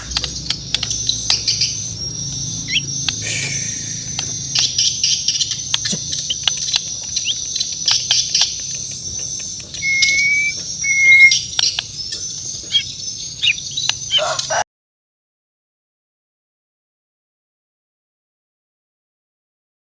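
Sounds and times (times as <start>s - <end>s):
bird singing clicking chips: 0.0s - 14.6s
bird whistled notes: 1.6s - 6.5s, 7.2s - 11.8s
high-pitched background tone: 8.6s - 11.6s.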